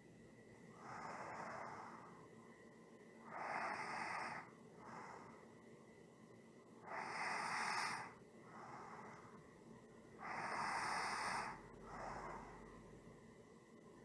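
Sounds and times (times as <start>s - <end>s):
slow human breathing: 6.9s - 9.6s.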